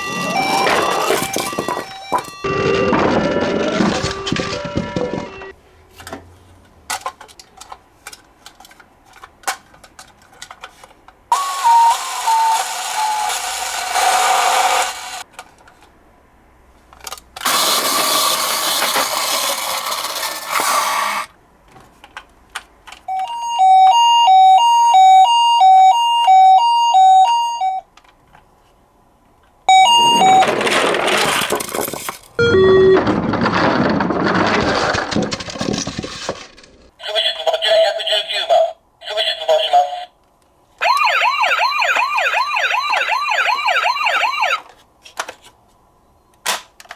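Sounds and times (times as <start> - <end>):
toy electronic sirens: 0.0 - 5.5, 11.3 - 15.2, 23.1 - 27.8, 29.7 - 30.6, 32.4 - 33.0, 40.8 - 44.7
plastic clicks and clatter: 6.9 - 11.2
buzzy electronic siren falling: 40.8 - 44.6.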